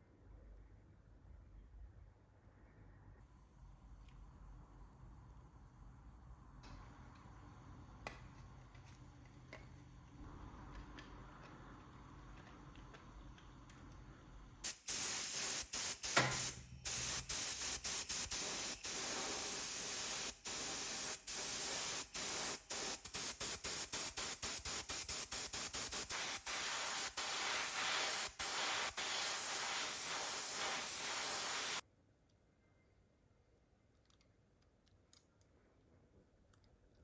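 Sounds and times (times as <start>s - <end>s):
spray paint hissing: 14.6s - 31.8s.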